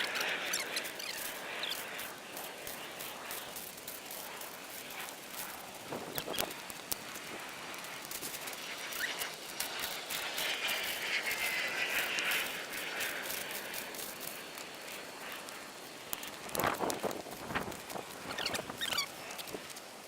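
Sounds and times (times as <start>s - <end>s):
bird chirp: 18.3s - 19.1s.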